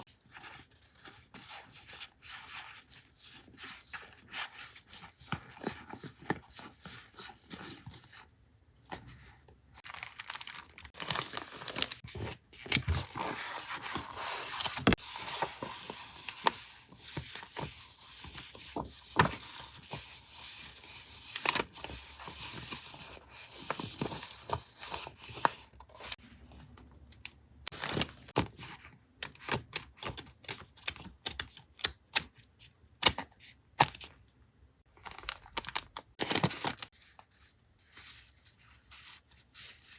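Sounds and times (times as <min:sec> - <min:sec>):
paper and packaging rustling: 0:08.9 - 0:26.2.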